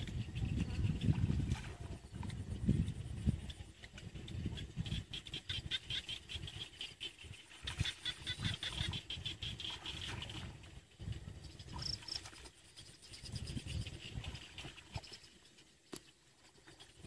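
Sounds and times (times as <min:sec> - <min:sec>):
pulsing high-pitched animal call: 0:05.2 - 0:10.0.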